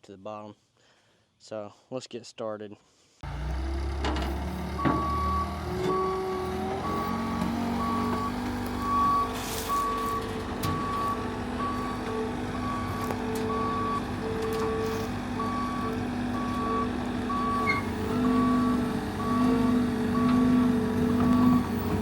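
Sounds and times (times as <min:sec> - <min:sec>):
diesel engine running: 0:03.2 - 0:22.0
backup alarm beeping: 0:04.8 - 0:21.6.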